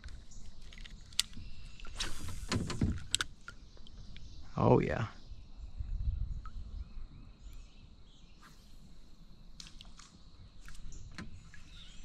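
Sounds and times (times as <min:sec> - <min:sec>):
faint bird chirps: 0:03.4 - 0:09.6, 0:10.3 - 0:12.0.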